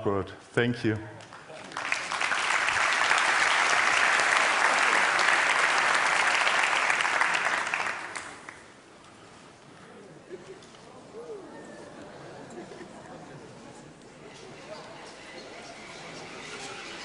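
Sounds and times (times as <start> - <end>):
audience applauding: 1.2 - 8.7.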